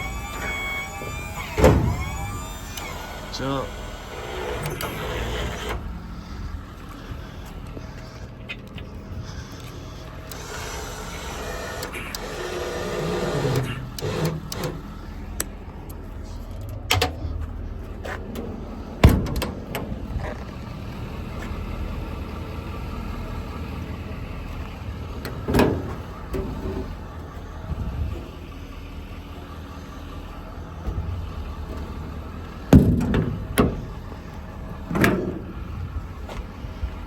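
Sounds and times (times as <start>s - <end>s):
mechanical whine: 0.0s - 17.2s
truck engine running: 0.0s - 37.0s
metal knocks and clunks: 18.1s - 20.5s, 32.7s - 33.9s.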